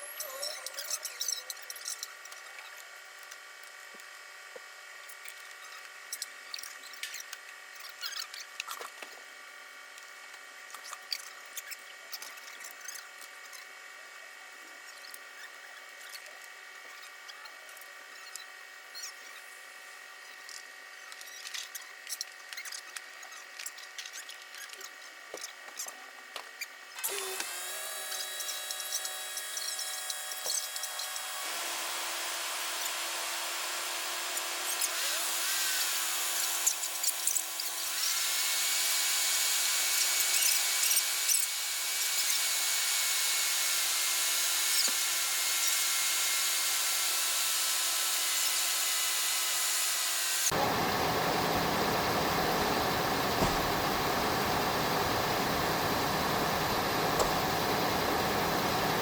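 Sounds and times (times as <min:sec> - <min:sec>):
electric motor whine: 0:27.0 - 0:59.0.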